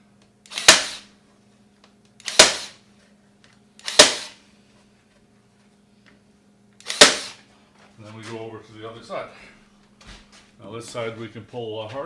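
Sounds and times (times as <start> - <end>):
stapler firing: 0.5 - 1.1, 2.2 - 2.8, 3.8 - 4.4, 6.8 - 7.4.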